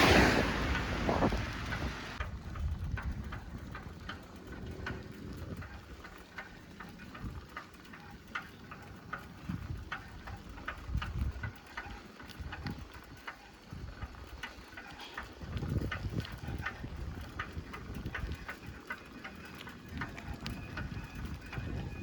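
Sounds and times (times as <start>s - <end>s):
wind on microphone: 0.0s - 6.1s, 9.3s - 11.6s, 15.2s - 18.8s, 19.9s - 22.0s
bicycle clicks and rattles: 0.6s - 22.0s.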